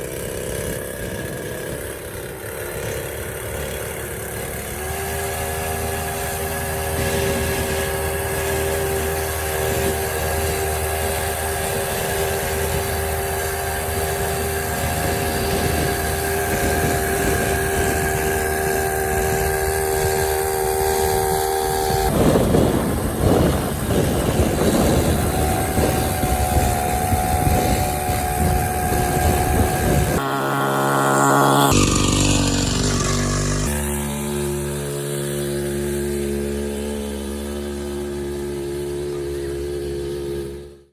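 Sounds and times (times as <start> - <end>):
small two-stroke engine running: 0.0 - 40.9.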